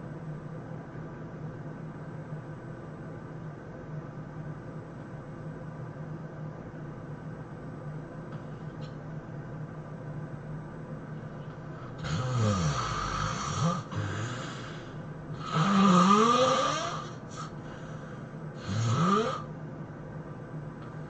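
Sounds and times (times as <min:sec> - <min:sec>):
person snoring: 0:11.7 - 0:19.5.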